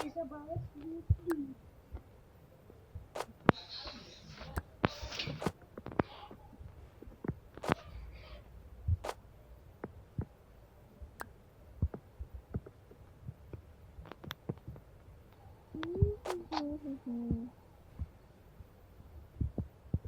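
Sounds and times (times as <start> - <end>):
short pitched voice: 15.8 - 17.5.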